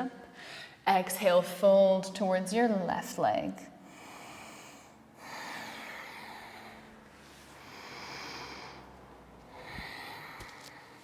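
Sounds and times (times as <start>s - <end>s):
woman breathing slowly: 0.3s - 0.8s, 3.8s - 11.0s.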